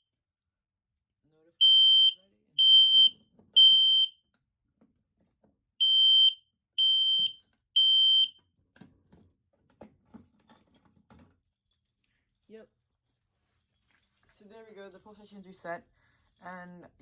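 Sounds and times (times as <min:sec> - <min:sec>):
fire alarm horn beeps: 0:01.6 - 0:04.2, 0:05.8 - 0:08.4.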